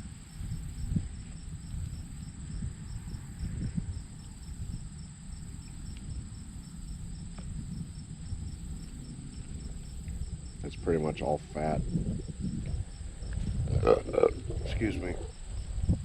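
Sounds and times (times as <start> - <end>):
insects trilling: 0.0 - 16.0
low rumble: 11.8 - 16.0.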